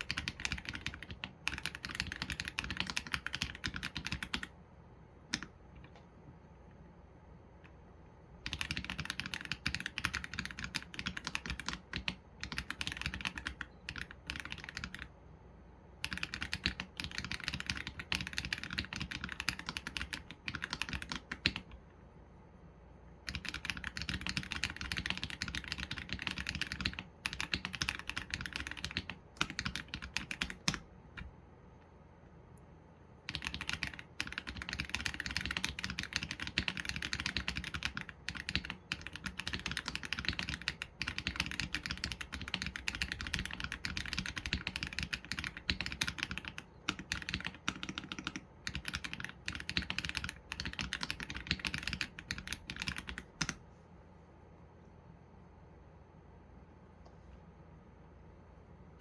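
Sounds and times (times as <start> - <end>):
mechanical keyboard typing: 0.0 - 4.6, 5.2 - 6.0, 8.4 - 15.1, 16.0 - 21.8, 23.2 - 31.3, 33.2 - 53.6.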